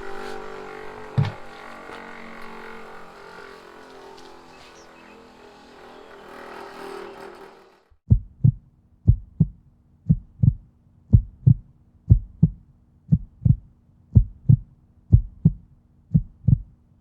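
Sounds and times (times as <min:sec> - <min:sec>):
heartbeat double thump: 0:08.1 - 0:16.7.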